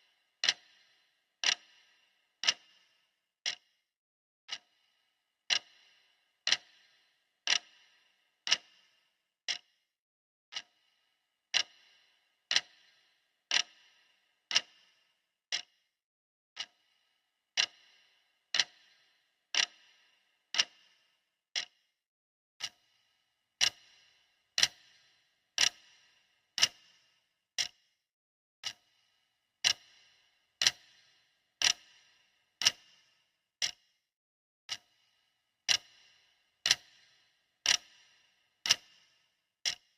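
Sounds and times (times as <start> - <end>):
clock ticking: 0.0 - 3.6, 4.5 - 9.7, 10.5 - 10.9, 11.5 - 15.7, 17.6 - 21.0, 22.6 - 23.0, 23.6 - 27.8, 28.6 - 29.0, 29.6 - 34.0, 34.7 - 39.9.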